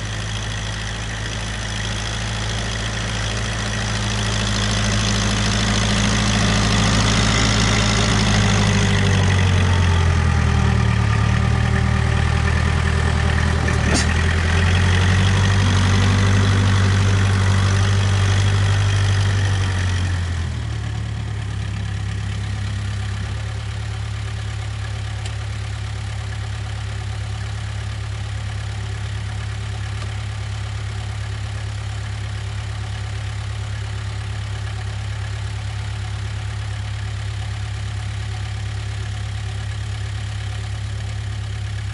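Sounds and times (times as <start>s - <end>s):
diesel engine running: 0.0s - 41.9s.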